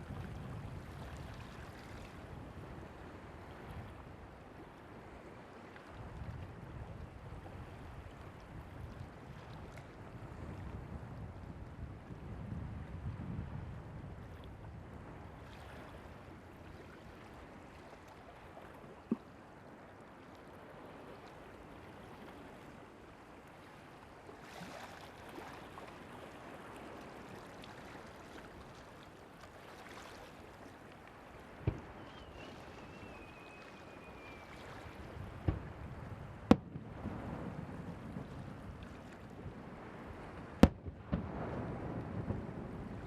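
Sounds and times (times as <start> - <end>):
wind: 0.0 - 43.0
surf: 20.3 - 43.0
fireworks bangs: 36.4 - 37.7, 40.6 - 42.5.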